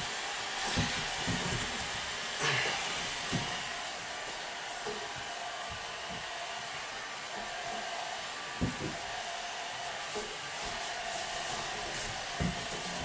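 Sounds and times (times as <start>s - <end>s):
hair dryer running: 0.0s - 13.0s.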